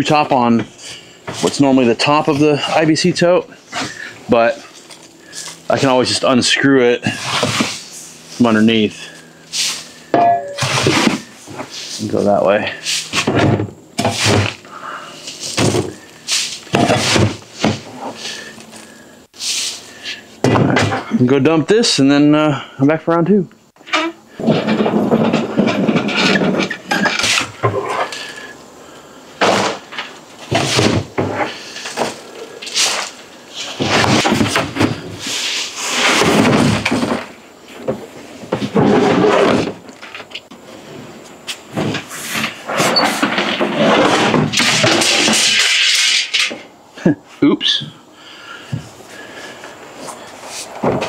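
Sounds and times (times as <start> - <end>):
shovel scraping plastic tub: 7.0 - 10.0, 10.6 - 20.2, 30.5 - 37.2, 41.8 - 46.3
shovel thunks: 10.1 - 11.6, 13.1 - 14.6, 15.4 - 18.0, 29.4 - 33.1
shovel scraping plastic: 30.5 - 37.0.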